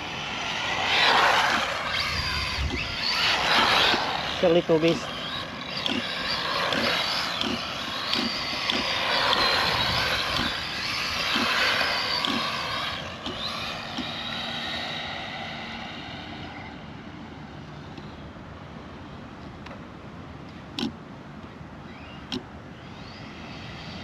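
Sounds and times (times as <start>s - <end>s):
rc car electric motor whining: 0.0s - 18.2s, 21.8s - 24.0s.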